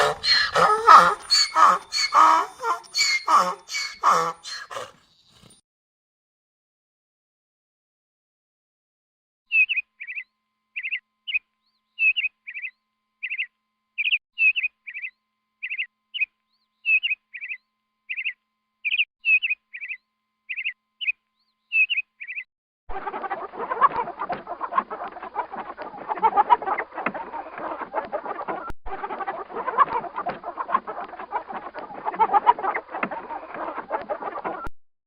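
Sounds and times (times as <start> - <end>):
chickens clucking: 0.0 - 5.6, 23.0 - 34.7.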